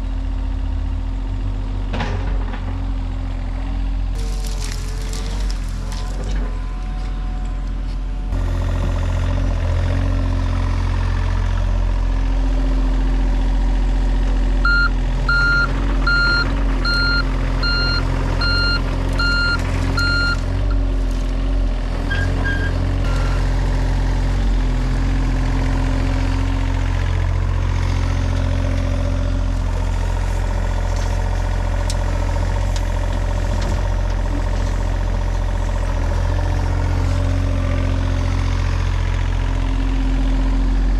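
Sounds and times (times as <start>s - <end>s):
heavy vehicle engine running: 0.0s - 40.9s
reversing alarm beeps: 14.6s - 20.4s, 22.1s - 23.5s.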